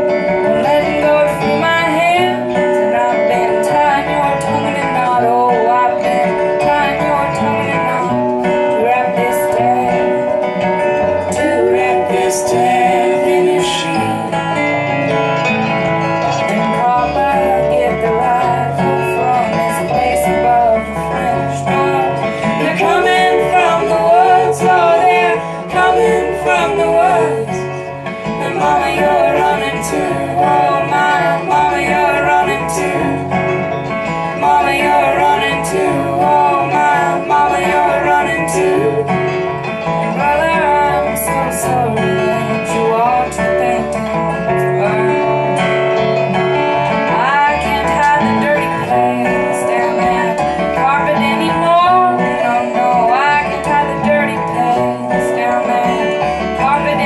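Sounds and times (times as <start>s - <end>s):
person singing: 0.0s - 57.0s
plucked guitar: 0.0s - 57.0s.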